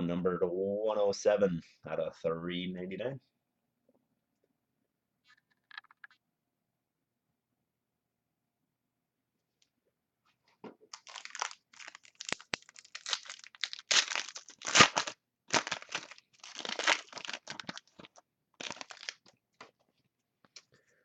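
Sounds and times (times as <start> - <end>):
wrapper tearing and crinkling: 10.9 - 19.3.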